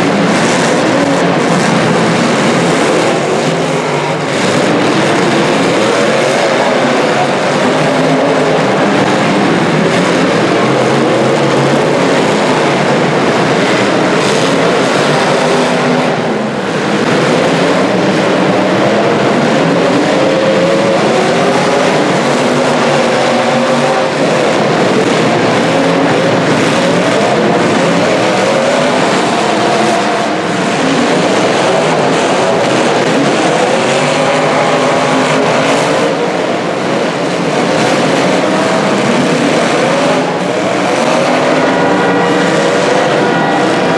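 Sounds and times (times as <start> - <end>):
car engines revving: 0.0 - 43.9.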